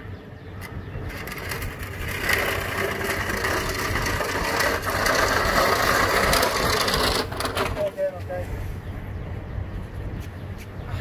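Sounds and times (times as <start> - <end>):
metal unit scraping across ground: 1.0 - 8.5.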